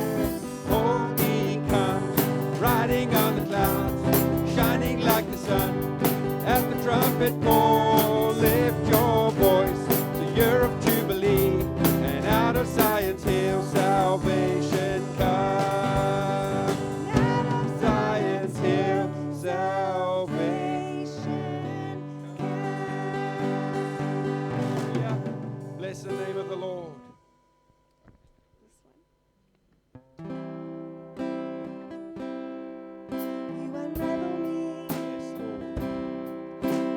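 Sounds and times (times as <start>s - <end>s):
drum hits: 0.0s - 18.6s, 24.6s - 25.8s, 35.8s - 36.9s
worship band playing: 0.0s - 26.9s, 34.0s - 36.9s.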